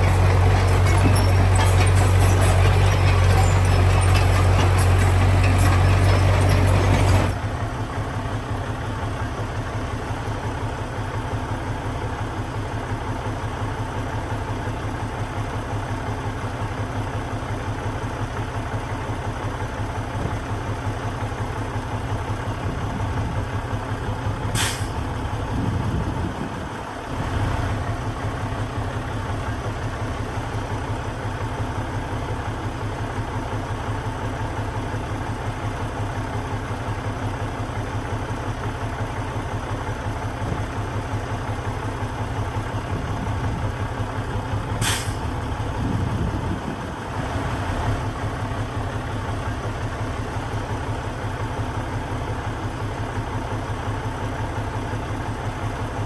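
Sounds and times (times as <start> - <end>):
heavy diesel engine running: 0.0 - 56.0
short hiss: 24.6 - 24.9, 44.8 - 45.2.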